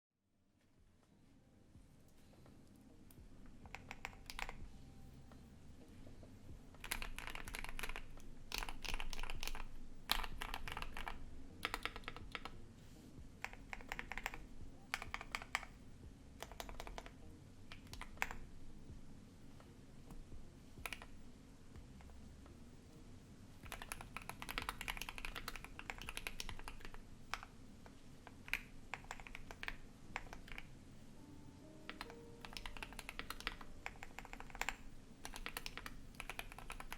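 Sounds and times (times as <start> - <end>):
desktop computer humming: 1.0 - 36.9
mechanical keyboard typing: 3.7 - 4.7, 6.7 - 12.6, 13.4 - 15.8, 16.4 - 18.5, 20.8 - 21.2, 23.6 - 30.8, 31.6 - 36.9.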